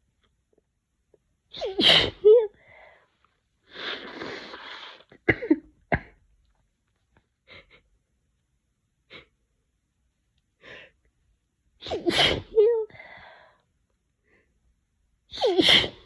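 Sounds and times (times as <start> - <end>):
sneezes: 1.6 - 2.3, 11.8 - 12.6, 15.3 - 16.0.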